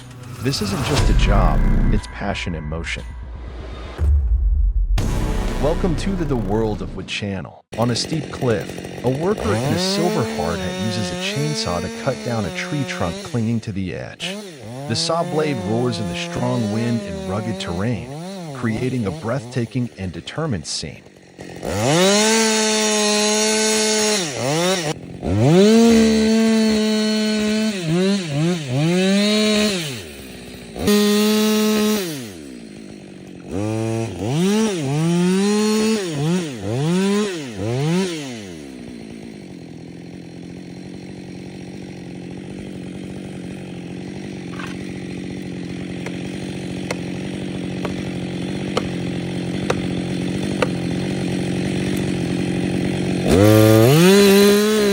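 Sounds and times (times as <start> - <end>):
chainsaw revving: 0.0 - 2.0, 5.0 - 7.0, 7.7 - 54.9.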